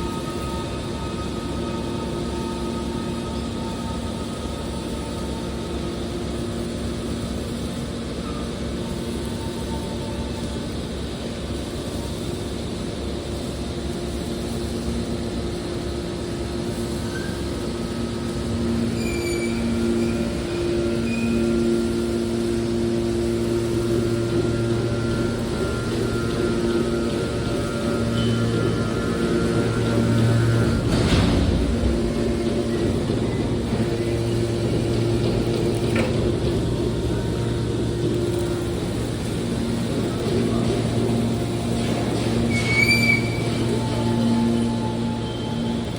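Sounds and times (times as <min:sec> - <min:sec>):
car baler machine drone: 0:00.0 - 0:45.9
engine and hydraulic unit humming: 0:00.0 - 0:45.9
short high squeals: 0:18.6 - 0:22.5, 0:42.4 - 0:45.9.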